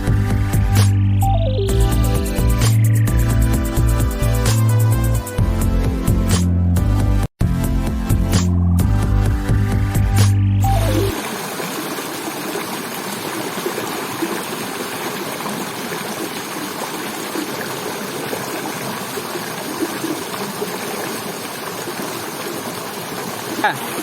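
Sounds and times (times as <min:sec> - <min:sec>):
river water rushing: 0:11.1 - 0:24.0.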